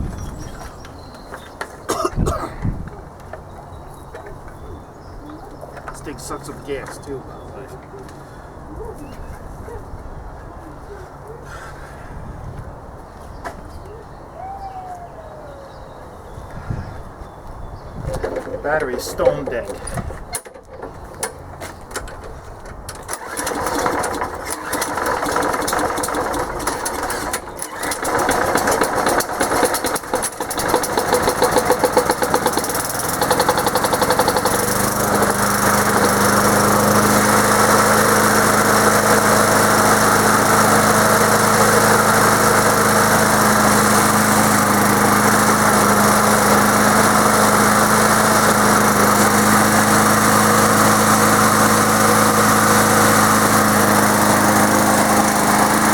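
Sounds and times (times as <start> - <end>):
lawn mower engine cranking and starting: 5.4 - 8.0, 18.0 - 55.9.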